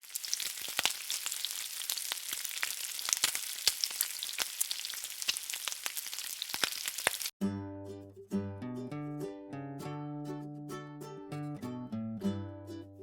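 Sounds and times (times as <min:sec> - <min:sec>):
sizzling hiss with crackles: 0:00.0 - 0:07.3.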